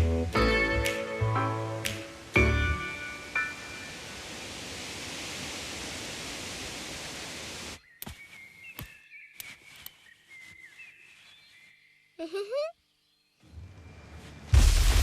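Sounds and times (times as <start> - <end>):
faint high chirping whistles: 7.8 - 14.1.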